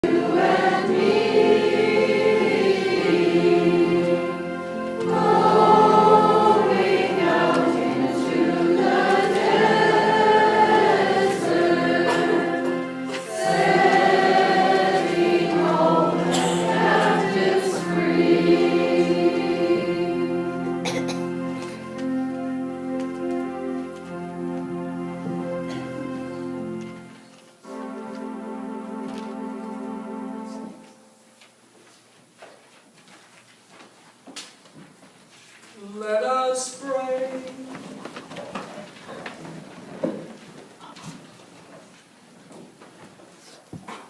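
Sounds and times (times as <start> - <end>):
church choir singing a hymn: 0.0 - 30.8.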